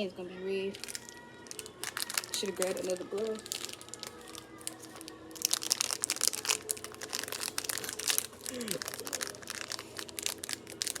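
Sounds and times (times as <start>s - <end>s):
plastic packaging crinkling: 0.7s - 11.0s.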